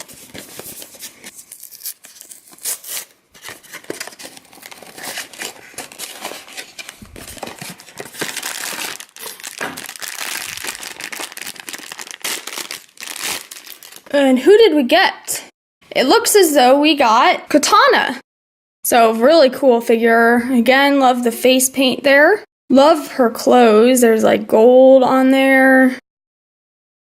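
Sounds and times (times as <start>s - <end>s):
foil bag crinkling and tearing: 0.0s - 14.2s.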